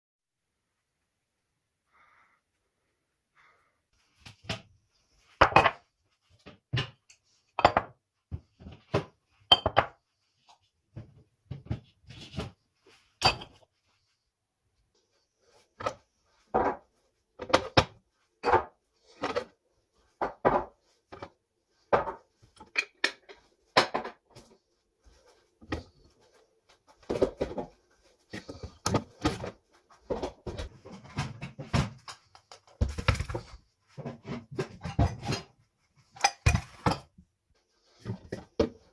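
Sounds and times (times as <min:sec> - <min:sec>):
dishes knocking and clinking: 0:05.4 - 0:05.9, 0:06.7 - 0:10.0, 0:13.2 - 0:13.6, 0:21.9 - 0:24.2.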